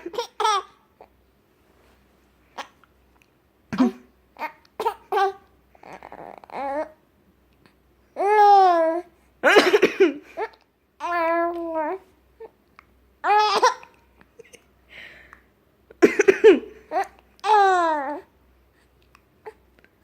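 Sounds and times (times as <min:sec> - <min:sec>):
baby laughing: 0:00.0 - 0:00.8, 0:13.3 - 0:14.6
woman coughing: 0:03.7 - 0:04.1, 0:09.4 - 0:10.2, 0:16.0 - 0:16.8
baby cooing and squealing: 0:04.4 - 0:07.0, 0:16.9 - 0:18.3.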